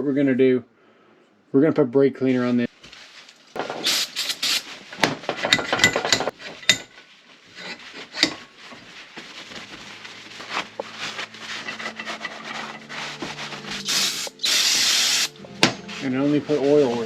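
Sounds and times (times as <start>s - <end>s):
rubbing as it is wiped: 2.8s - 5.5s, 6.3s - 17.0s
aerosol spray hiss: 3.8s - 4.8s, 13.8s - 15.4s.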